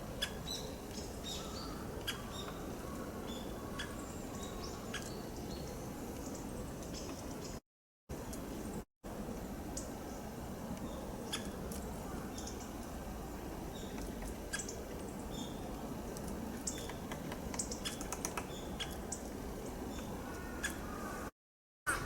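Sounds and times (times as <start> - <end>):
steady background noise: 0.0 - 21.3
bird call notes and ticks: 0.2 - 3.1, 3.8 - 5.2, 6.1 - 7.6, 10.7 - 12.9, 13.7 - 19.3.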